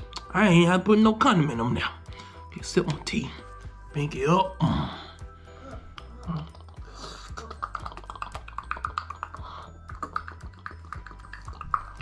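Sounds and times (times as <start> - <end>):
music with bass line: 0.0 - 12.0
quick clicking beat: 7.4 - 12.0.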